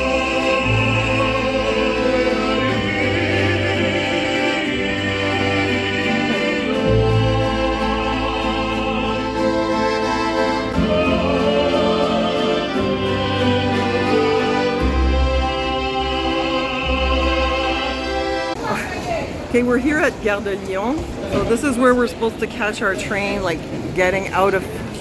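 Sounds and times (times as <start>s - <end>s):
choral singing over orchestra: 0.0s - 18.6s.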